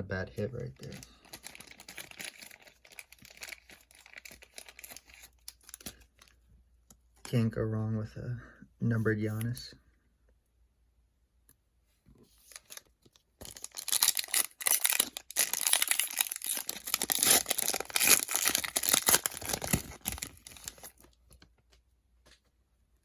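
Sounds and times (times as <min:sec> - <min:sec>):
foil wrapper tearing and crinkling: 0:00.7 - 0:06.3, 0:12.5 - 0:21.1.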